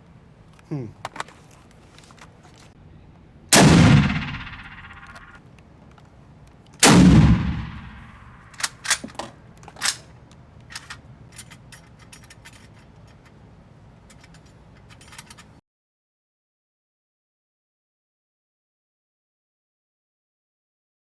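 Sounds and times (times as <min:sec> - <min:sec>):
rifle shot: 0:03.5 - 0:05.4, 0:06.8 - 0:09.0
sharp metallic clicks: 0:03.6 - 0:05.4, 0:06.7 - 0:10.0.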